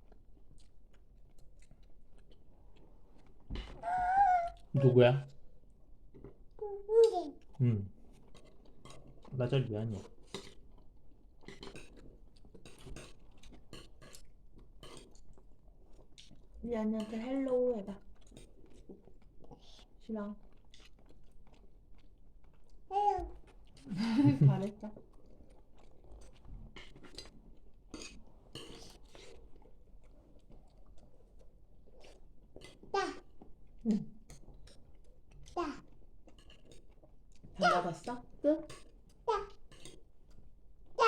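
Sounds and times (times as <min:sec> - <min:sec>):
cutlery and dishes clinking: 0:12.6 - 0:14.2, 0:36.3 - 0:37.0.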